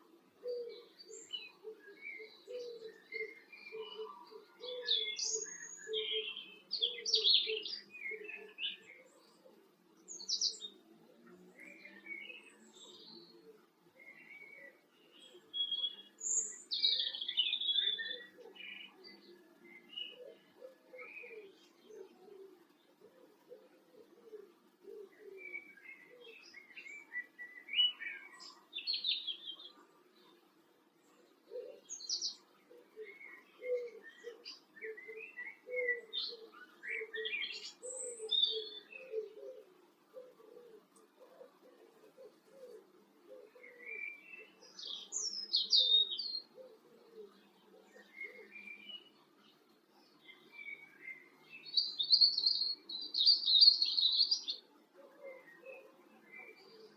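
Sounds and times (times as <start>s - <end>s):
birds chirping and singing: 0.5s - 9.5s, 14.1s - 22.5s, 31.1s - 39.7s, 40.3s - 56.9s.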